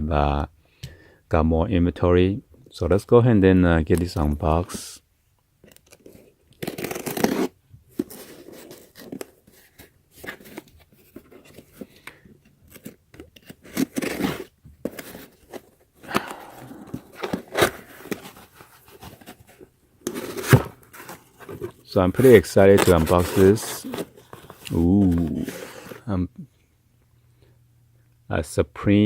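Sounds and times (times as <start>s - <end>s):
packaging tearing and rustling: 5.7s - 12.0s, 12.6s - 26.0s.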